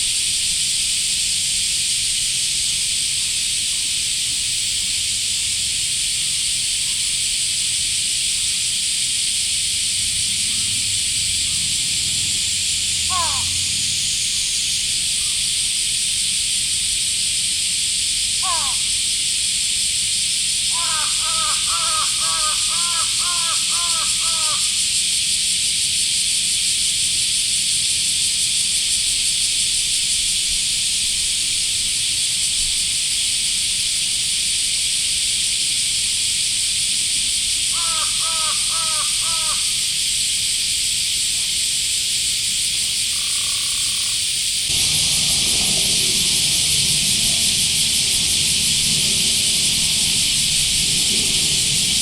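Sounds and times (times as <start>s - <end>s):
cicadas chorus: 0.0s - 52.0s
crow cawing: 13.0s - 14.0s, 18.4s - 19.0s, 20.7s - 24.9s, 37.7s - 39.9s, 43.1s - 52.0s
low rumbling noise: 44.7s - 52.0s.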